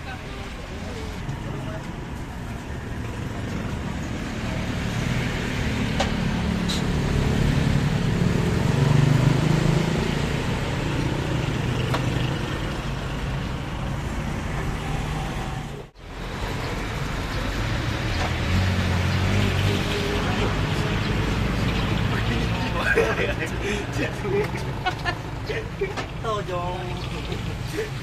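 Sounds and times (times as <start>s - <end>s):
vehicle engine passing: 0.0s - 28.0s.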